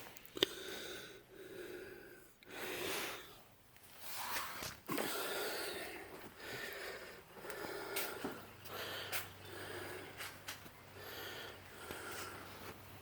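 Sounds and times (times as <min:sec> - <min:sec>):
person breathing: 0:00.4 - 0:03.5, 0:04.9 - 0:13.0.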